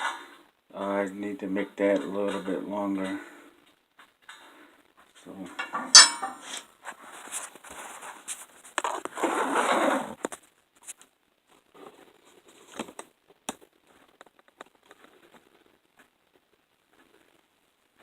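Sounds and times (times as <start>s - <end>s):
metal scraping on work surface: 5.6s - 6.6s
metal tools clicking and tapping: 5.6s - 6.6s.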